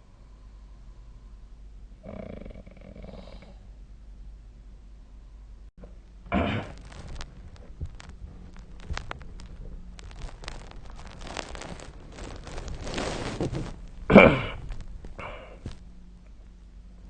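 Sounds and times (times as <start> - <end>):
person snorting in sleep: 2.0 - 3.7, 14.1 - 15.8
light rustling: 5.8 - 16.6.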